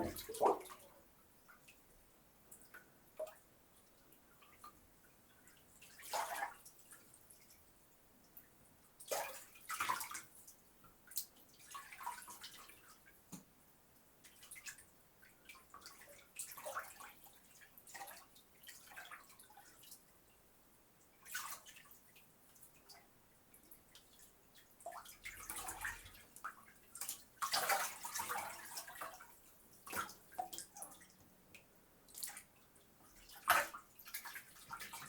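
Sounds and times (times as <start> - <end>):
bathwater splashing: 0.0 - 0.8, 27.0 - 29.2, 33.2 - 35.0
water dripping: 0.0 - 1.9.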